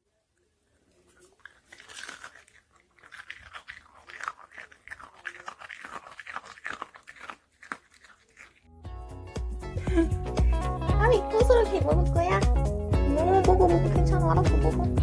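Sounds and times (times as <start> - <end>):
dog crunching a cookie: 0.7 - 8.7.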